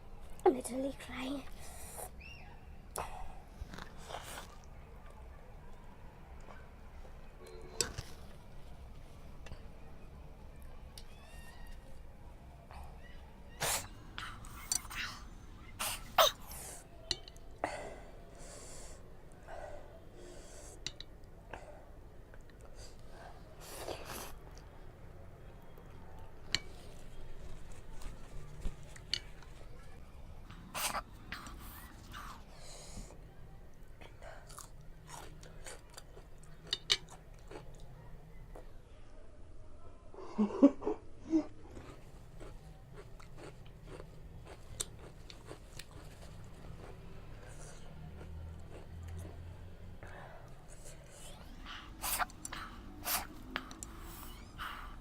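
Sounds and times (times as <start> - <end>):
person chewing noodles: 34.4 - 38.6, 41.7 - 49.5.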